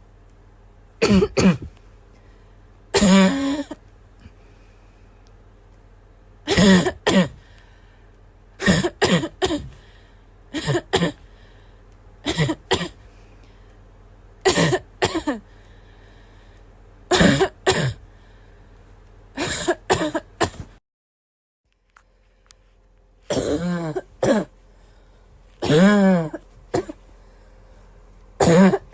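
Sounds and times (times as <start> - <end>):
girl coughing: 1.0 - 1.7, 3.0 - 3.8, 6.5 - 7.4, 8.6 - 9.8, 10.6 - 11.2, 12.3 - 13.0, 14.5 - 15.4, 17.1 - 18.0, 19.4 - 20.7, 23.3 - 24.5, 25.6 - 27.0, 28.4 - 28.9.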